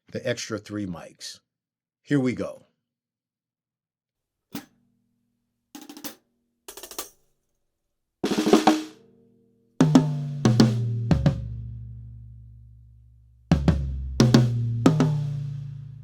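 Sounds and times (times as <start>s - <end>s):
acoustic drum kit: 8.2s - 9.0s, 9.8s - 12.8s, 13.5s - 16.0s.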